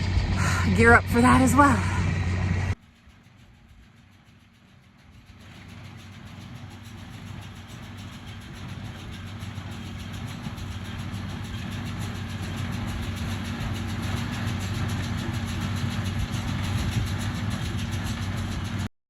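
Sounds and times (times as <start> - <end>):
engine humming: 0.0 - 18.9.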